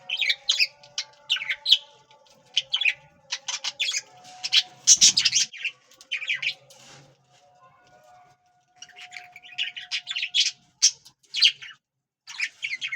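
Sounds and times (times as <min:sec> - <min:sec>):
budgerigars chirping and squawking: 0:00.0 - 0:07.0, 0:08.8 - 0:12.9.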